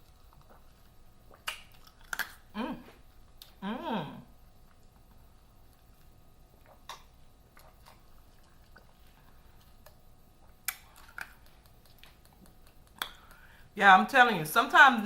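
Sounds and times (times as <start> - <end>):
wet mouth sounds: 0.0 - 5.0, 6.5 - 13.6
person sipping and swallowing: 0.1 - 3.6, 6.5 - 13.6.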